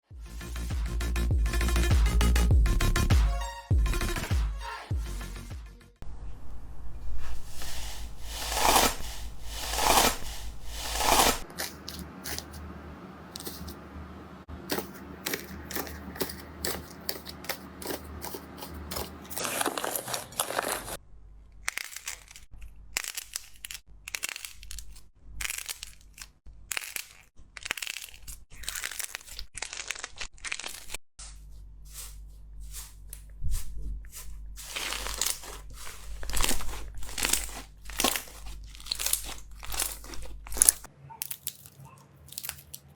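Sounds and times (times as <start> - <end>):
slime squeezed by hand: 7.5 - 11.5.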